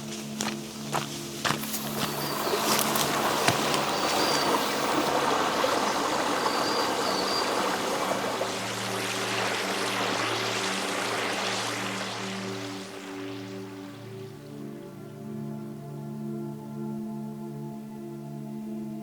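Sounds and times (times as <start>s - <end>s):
stream water rushing: 0.0s - 14.6s
soft sustained background music: 0.0s - 19.0s.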